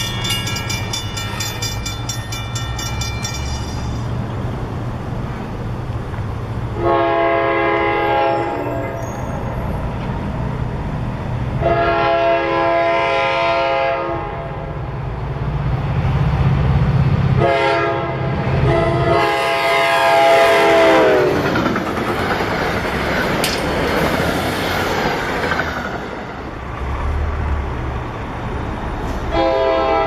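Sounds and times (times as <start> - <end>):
train cars clattering past: 0.0 - 12.3, 18.4 - 30.0
train horn: 6.8 - 9.0, 11.6 - 14.8, 17.4 - 21.4, 29.3 - 30.0.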